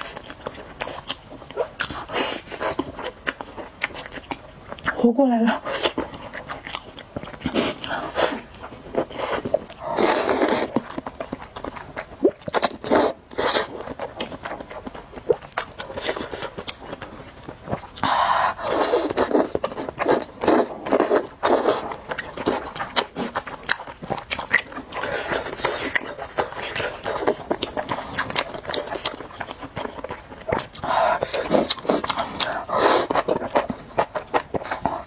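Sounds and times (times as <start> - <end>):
chewing: 0.0 - 35.0
slurping noodles: 7.4 - 10.9, 12.0 - 17.3, 18.0 - 35.0.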